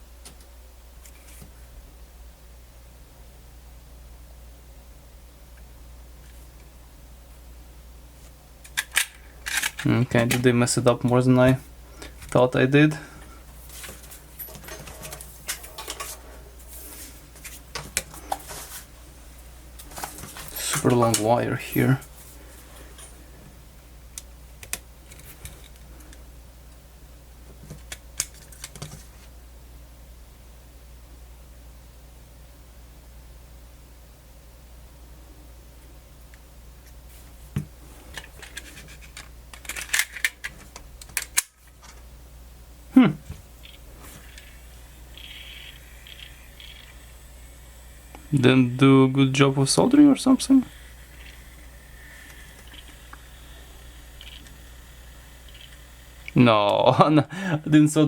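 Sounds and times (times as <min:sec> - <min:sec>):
steady low hum: 0:00.0 - 0:58.0
sharp little clicks and scratches: 0:45.2 - 0:47.0, 0:54.2 - 0:54.6, 0:55.5 - 0:56.4.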